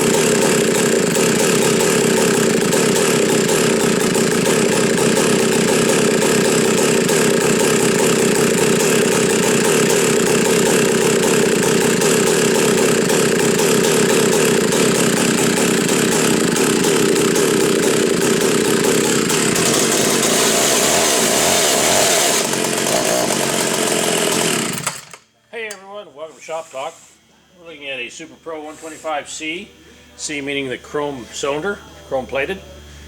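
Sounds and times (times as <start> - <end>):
chainsaw engine running: 0.0 - 25.3.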